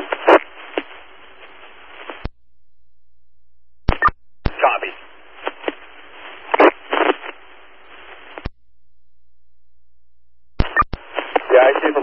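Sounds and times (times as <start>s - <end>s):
garbled radio bursts: 0.0s - 0.5s, 6.5s - 7.4s
radio squelch click: 0.0s - 2.4s, 3.9s - 4.6s, 6.4s - 7.4s, 8.0s - 8.6s, 10.6s - 12.0s
radio static hiss: 0.0s - 2.4s, 3.9s - 8.6s, 10.6s - 12.0s
low hum: 0.0s - 11.0s.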